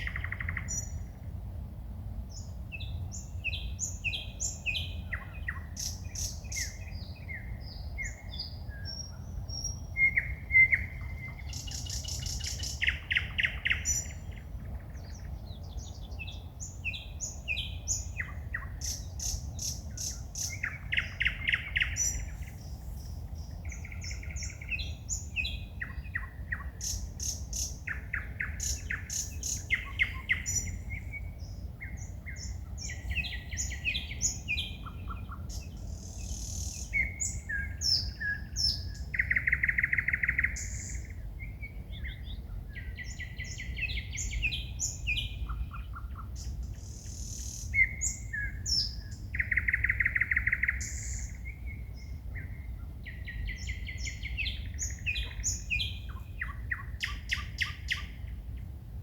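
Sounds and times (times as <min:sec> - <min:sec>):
steady low rumble: 0:00.0 - 0:39.7
songbird singing: 0:00.0 - 0:59.0.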